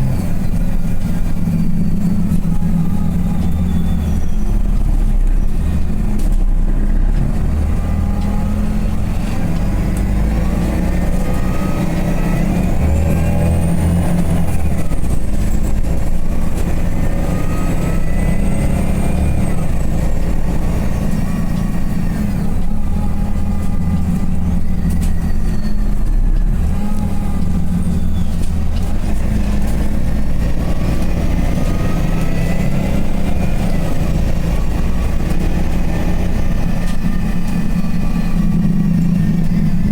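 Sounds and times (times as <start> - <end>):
bus engine drone with whine: 0.0 - 39.9.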